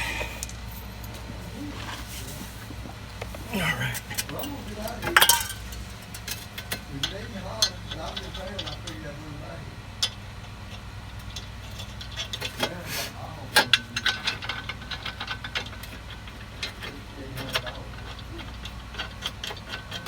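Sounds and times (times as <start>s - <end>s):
steady low hum: 0.0s - 20.0s
metal tools clinking: 3.3s - 9.1s.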